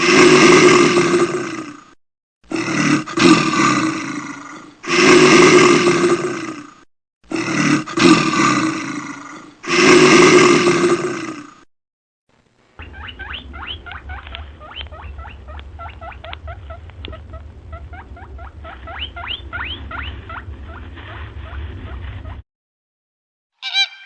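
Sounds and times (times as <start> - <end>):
low steady hum: 12.3 - 22.3
small animal squeaking: 12.8 - 21.6.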